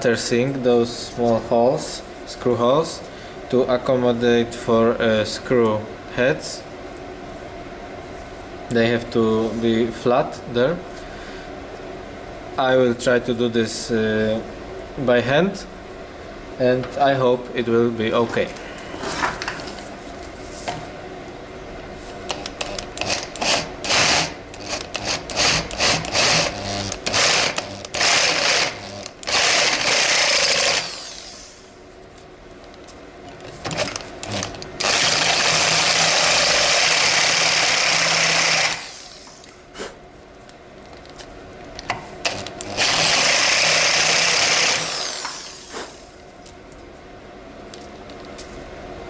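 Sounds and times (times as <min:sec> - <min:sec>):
electric drill cutting steel: 0:22.6 - 0:31.7, 0:33.8 - 0:39.5, 0:42.3 - 0:46.0.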